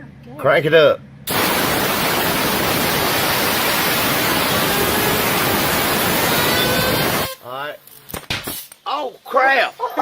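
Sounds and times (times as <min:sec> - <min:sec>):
blower air rushing: 0:01.3 - 0:07.4
fidget spinner whining: 0:04.1 - 0:07.4.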